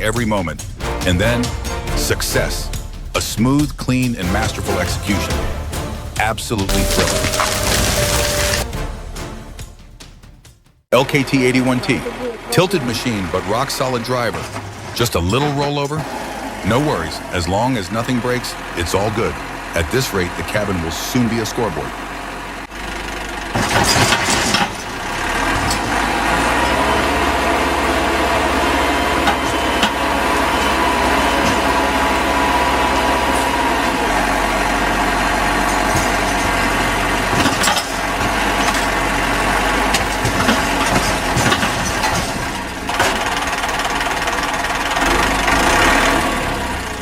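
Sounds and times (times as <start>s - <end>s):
knocks and clatters: 6.7s - 10.8s.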